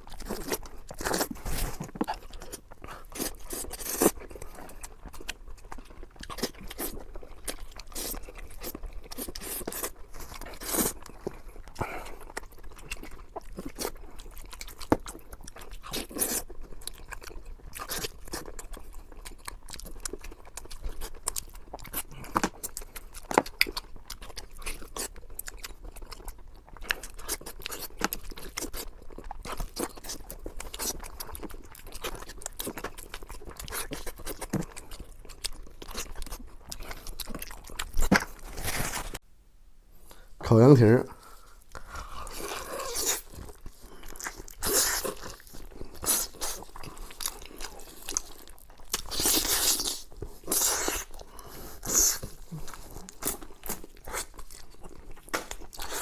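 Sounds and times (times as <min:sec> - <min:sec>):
person chewing crunchy food: 0:00.0 - 0:39.2, 0:41.1 - 0:56.0.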